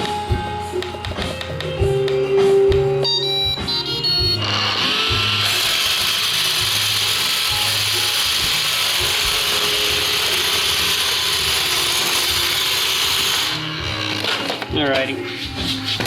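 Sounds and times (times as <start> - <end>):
robot vacuum whirring: 3.7 - 14.6.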